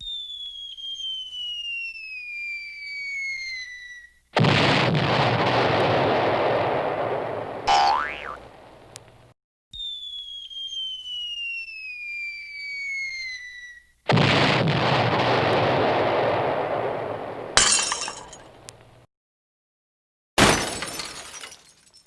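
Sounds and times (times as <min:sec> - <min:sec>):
falling whistle: 0:00.0 - 0:04.2, 0:09.7 - 0:14.0
shattering burst: 0:04.4 - 0:09.3, 0:14.1 - 0:19.0, 0:20.4 - 0:22.0
loud crash: 0:14.1 - 0:18.6.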